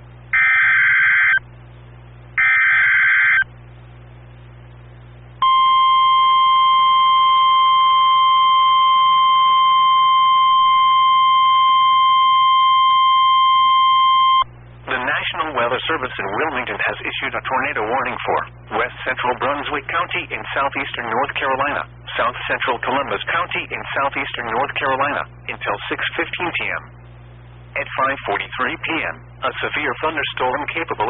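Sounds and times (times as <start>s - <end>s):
steady warning alarm tone: 0.3s - 1.4s, 2.4s - 3.5s, 5.4s - 14.4s.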